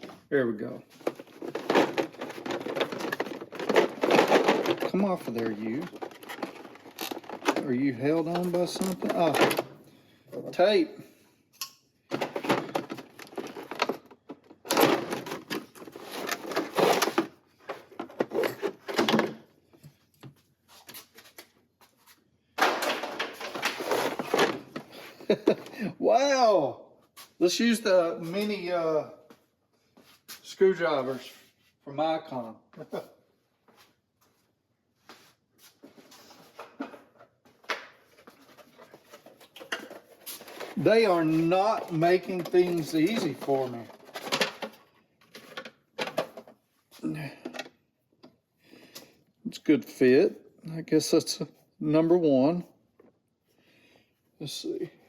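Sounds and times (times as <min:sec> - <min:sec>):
plastic packaging being handled: 0:01.0 - 0:09.6, 0:38.1 - 0:46.2.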